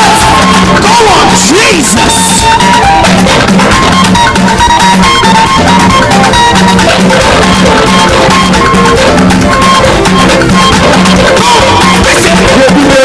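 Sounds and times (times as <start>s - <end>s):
drum kit: 0.0s - 13.0s
live band playing upbeat groove: 0.0s - 13.0s
pulsing bass line: 0.0s - 13.0s.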